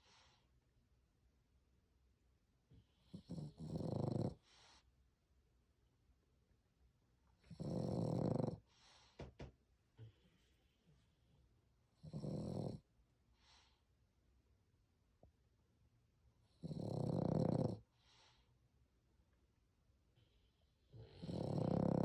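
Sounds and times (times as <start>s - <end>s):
dog snoring loudly: 3.0s - 4.6s, 7.4s - 8.7s, 12.0s - 12.8s, 16.5s - 17.9s, 20.9s - 22.0s
dog snorts and snuffles: 3.0s - 4.8s, 7.4s - 9.2s, 12.0s - 12.8s, 21.1s - 22.0s.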